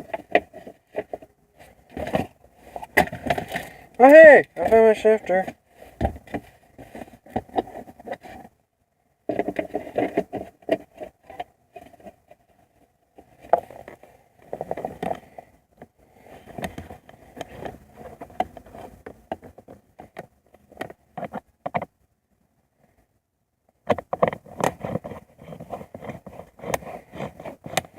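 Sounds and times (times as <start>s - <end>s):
plastic trim scraping and rubbing: 9.3s - 12.4s, 16.4s - 21.9s, 23.8s - 27.9s.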